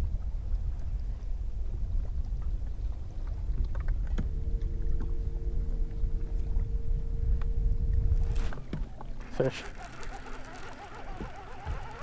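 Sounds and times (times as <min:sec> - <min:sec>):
boat engine rumble: 0:00.0 - 0:12.0
steady hum: 0:03.1 - 0:12.0
small clicks: 0:08.2 - 0:12.0.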